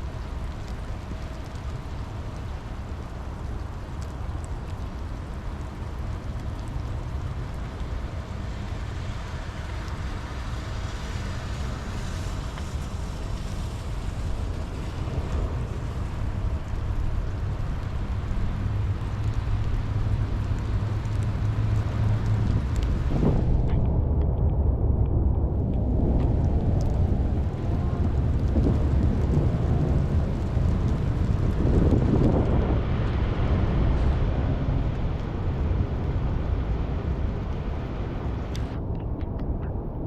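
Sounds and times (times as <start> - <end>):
deep low rumble: 0.0 - 40.0
steady rain: 0.0 - 40.0.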